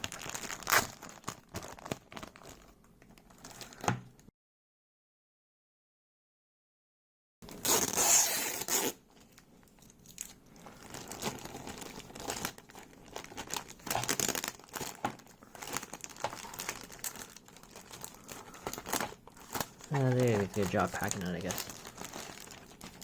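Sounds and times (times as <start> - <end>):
packing tape tearing: 0.0 - 2.5, 7.5 - 9.0, 9.8 - 23.0
packaging crinkling and rustling: 0.0 - 4.2, 7.4 - 23.0.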